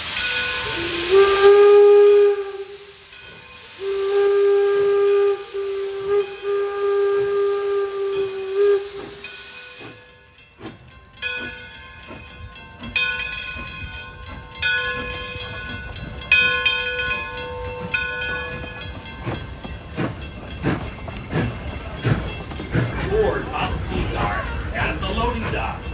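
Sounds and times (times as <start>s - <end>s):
steam locomotive whistle: 0.0s - 10.2s
hissing steam: 0.0s - 25.9s.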